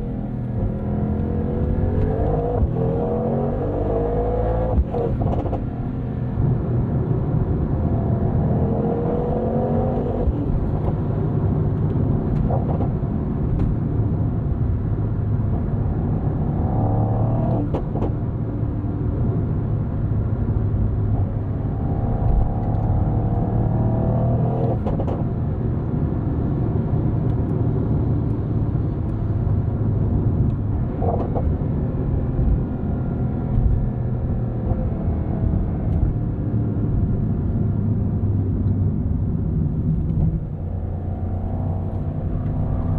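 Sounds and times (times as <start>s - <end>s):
car engine accelerating: 0.0s - 14.2s, 27.4s - 42.9s.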